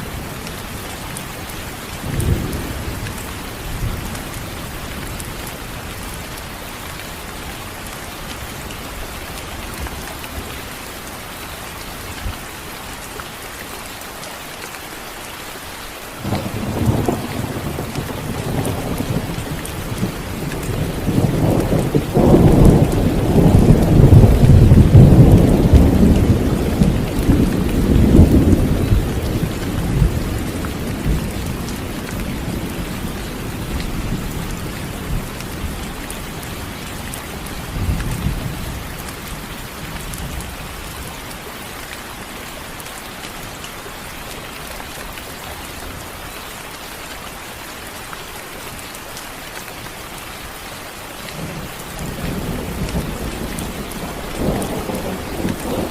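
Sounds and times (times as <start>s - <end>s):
steady rain falling: 0.0s - 55.9s
thunder rumbling: 16.2s - 36.0s, 51.4s - 55.9s.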